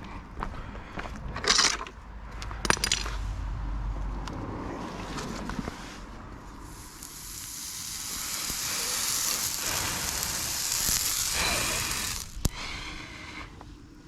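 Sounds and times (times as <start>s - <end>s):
hot steel sizzling: 6.4s - 13.6s.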